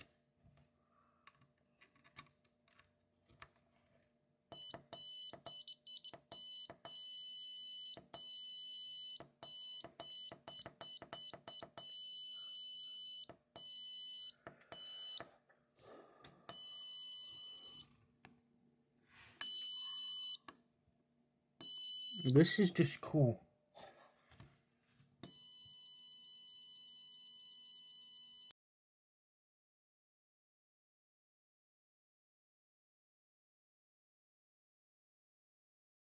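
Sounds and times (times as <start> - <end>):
shrill electronic buzzer beeps: 4.5 - 15.2, 16.5 - 17.9, 19.4 - 20.5, 21.6 - 22.6, 25.2 - 28.5.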